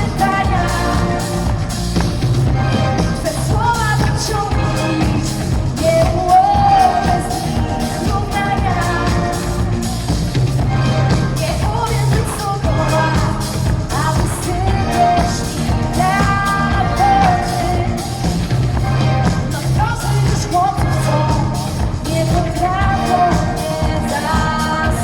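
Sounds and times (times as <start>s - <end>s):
person singing: 0.0s - 25.0s
rock band with drums: 0.0s - 25.0s.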